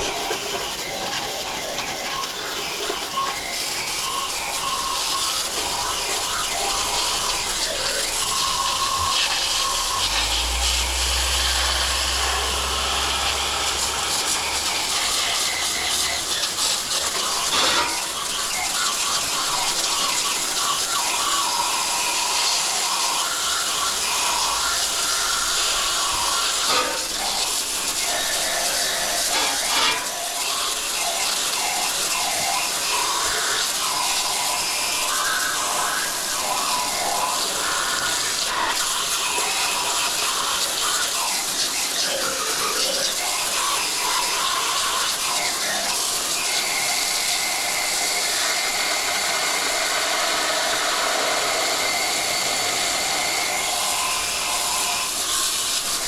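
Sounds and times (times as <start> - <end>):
hose spraying water on metal coil: 0.0 - 56.0
low hum: 6.1 - 16.3.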